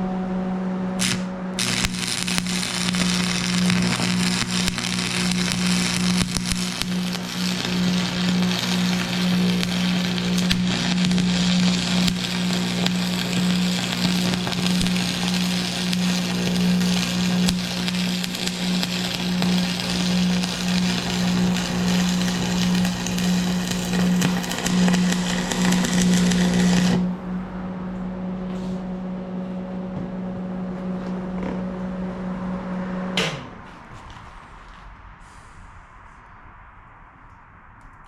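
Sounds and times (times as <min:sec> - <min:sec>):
machine hum: 0:00.0 - 0:33.8
welding arc crackling: 0:01.0 - 0:27.2.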